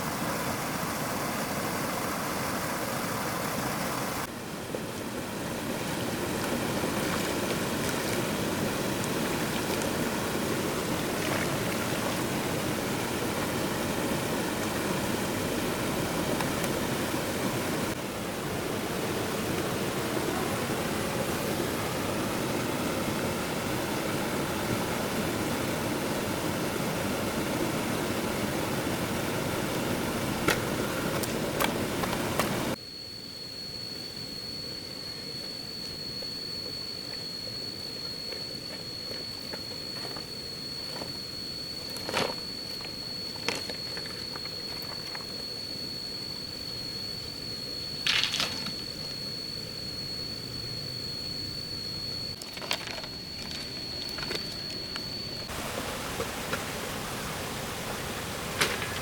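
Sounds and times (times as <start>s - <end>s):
water rushing in a stream: 0.0s - 32.8s, 52.3s - 59.0s.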